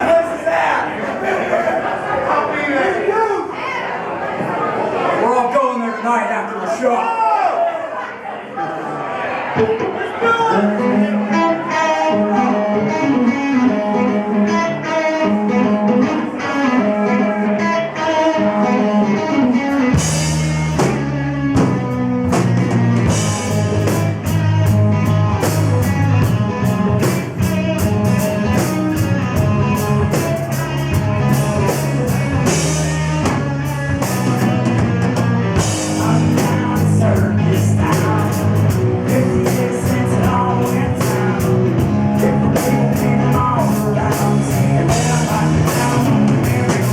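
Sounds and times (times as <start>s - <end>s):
electric guitar line: 9.6s - 46.9s
live rock band playing: 9.6s - 46.9s.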